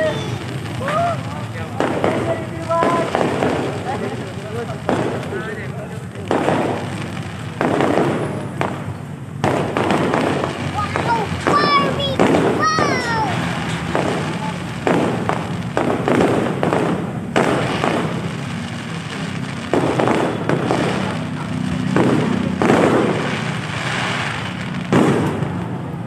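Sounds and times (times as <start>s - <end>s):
fireworks banging: 0.0s - 26.0s
fireworks crackling: 0.0s - 26.0s.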